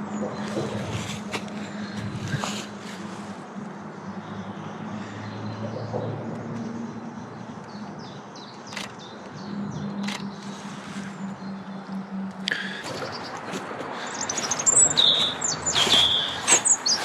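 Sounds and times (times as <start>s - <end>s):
small bird chirping: 14.0s - 17.0s.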